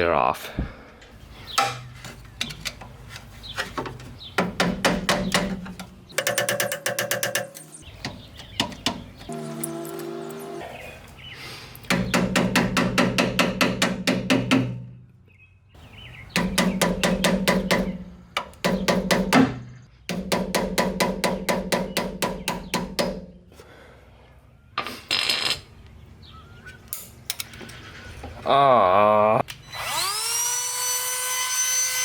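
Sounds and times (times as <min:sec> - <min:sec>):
power tool motor hum: 0:09.3 - 0:10.8, 0:29.6 - 0:32.0.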